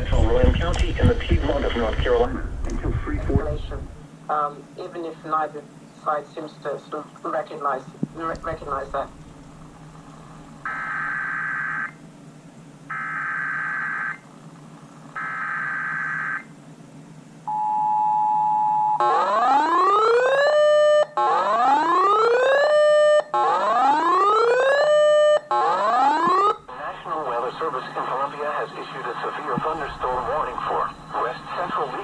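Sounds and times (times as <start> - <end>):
rising siren whoop: 19.0 - 26.6.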